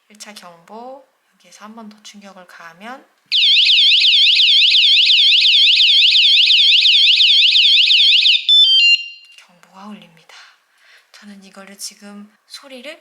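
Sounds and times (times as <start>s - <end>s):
high warbling alarm siren: 3.3s - 9.3s.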